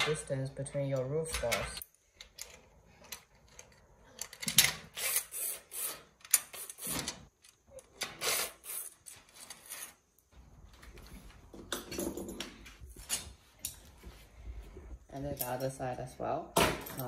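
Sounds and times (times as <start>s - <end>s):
metal parts scraping and clicking: 0.9s - 10.1s.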